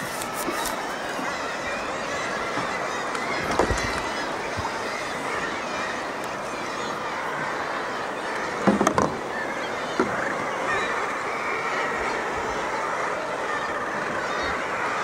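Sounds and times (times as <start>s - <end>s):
sea waves washing: 0.0s - 15.0s
seabird colony calling: 0.0s - 15.0s.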